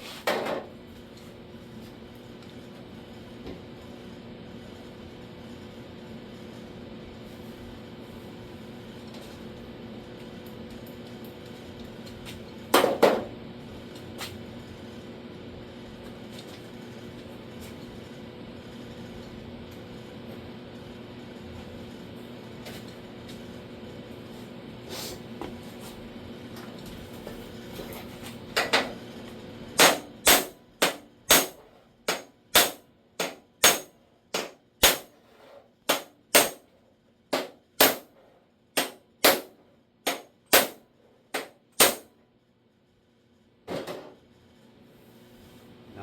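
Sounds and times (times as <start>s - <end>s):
hammer tapping on chisel: 38.8s - 39.4s.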